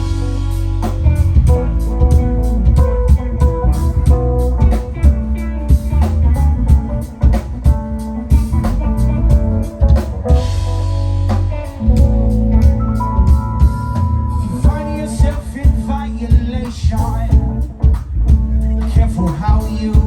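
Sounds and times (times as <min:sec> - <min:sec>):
bass guitar: 0:00.0 - 0:20.0
drum kit beat: 0:00.0 - 0:20.0
electric guitar playing: 0:00.0 - 0:20.0.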